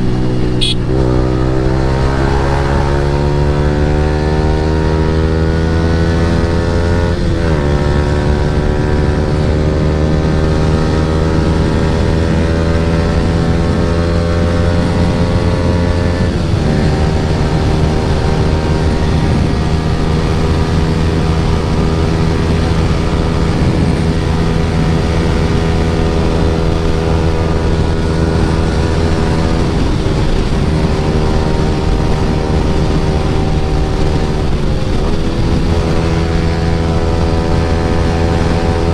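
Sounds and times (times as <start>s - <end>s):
wind rushing: 0.0s - 6.2s
motorcycle engine revving: 0.0s - 38.9s.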